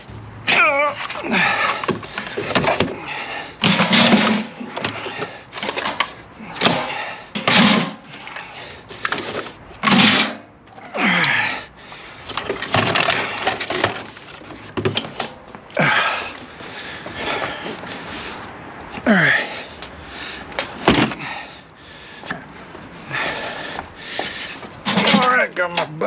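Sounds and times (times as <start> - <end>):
scrap banging and clattering: 0.5 - 10.5, 12.2 - 16.0, 24.2 - 25.6.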